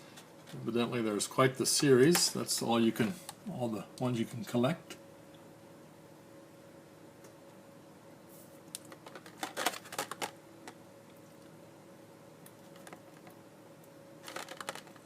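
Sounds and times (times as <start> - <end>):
packaging clicks and crinkles: 8.8 - 10.4, 14.2 - 15.0.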